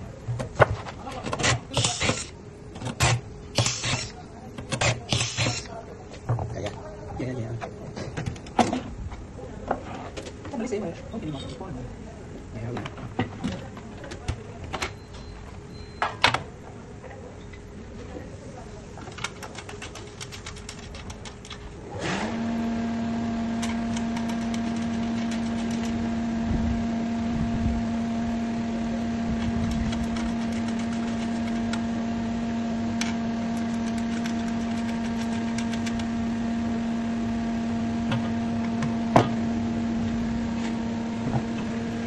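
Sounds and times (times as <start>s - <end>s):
electric drill drilling metal: 1.4s - 2.3s, 2.9s - 4.2s, 4.8s - 5.7s.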